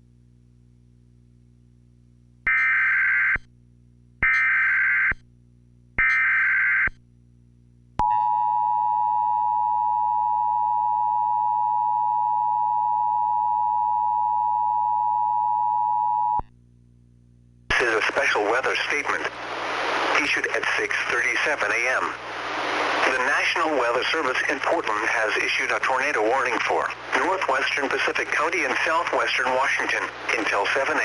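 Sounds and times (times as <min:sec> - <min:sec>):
long steady attention tone: 0:08.0 - 0:31.0.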